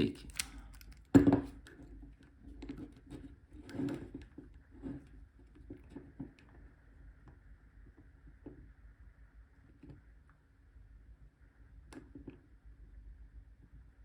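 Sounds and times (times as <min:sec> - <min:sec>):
metal pick in padlock: 0:00.2 - 0:01.1.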